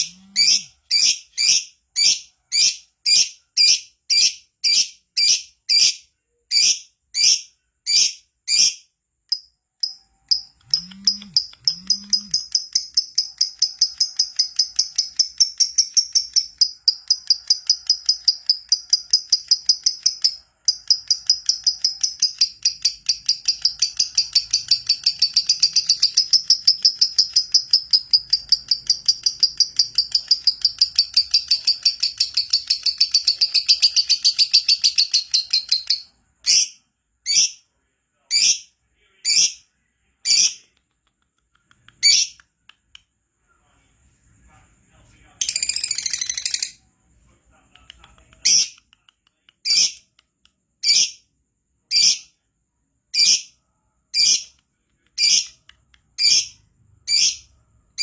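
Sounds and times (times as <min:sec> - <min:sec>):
sharp bird calls: 0:00.0 - 0:08.9, 0:10.3 - 0:37.6
lovebird rapid chirping: 0:00.0 - 0:37.6, 0:42.0 - 0:42.4, 0:45.4 - 0:46.8, 0:49.6 - 0:50.1, 0:50.8 - 0:51.2, 0:51.9 - 0:52.3, 0:53.2 - 0:54.6, 0:55.2 - 0:58.0.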